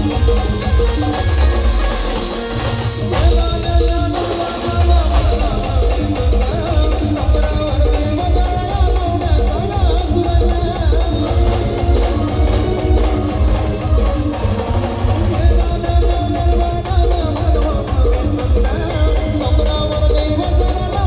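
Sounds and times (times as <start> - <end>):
heavy drum beat: 0.0 - 21.0
brass band playing a melody: 11.1 - 16.7.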